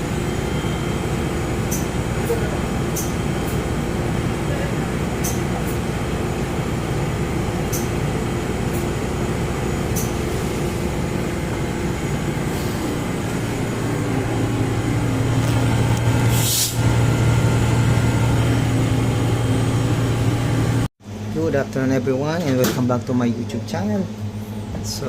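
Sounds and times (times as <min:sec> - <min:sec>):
low motor hum: 0:00.0 - 0:21.3
steady machinery hum: 0:00.0 - 0:25.0
compressed air hiss: 0:16.3 - 0:16.8.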